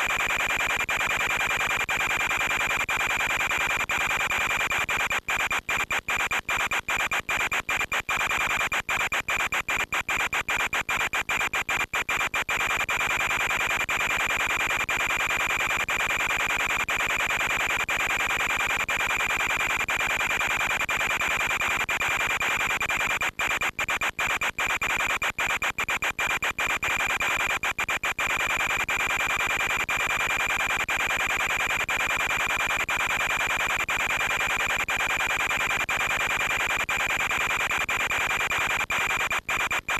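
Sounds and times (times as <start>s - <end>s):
radio hiss: 20.2s - 33.0s.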